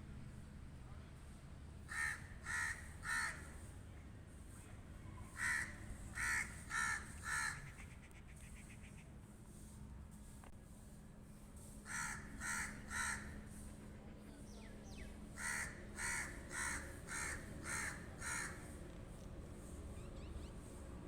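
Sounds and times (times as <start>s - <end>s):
crow cawing: 1.9s - 3.5s, 5.3s - 7.8s, 11.9s - 13.4s, 15.4s - 18.6s.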